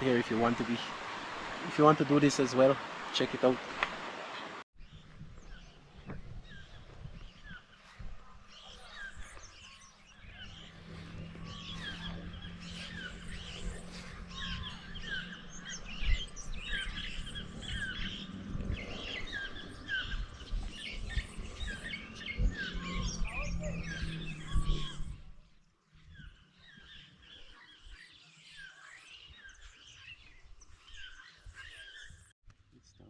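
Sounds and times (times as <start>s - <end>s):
birds chirping and calling: 0.0s - 32.3s
dull low thumps: 4.8s - 25.4s.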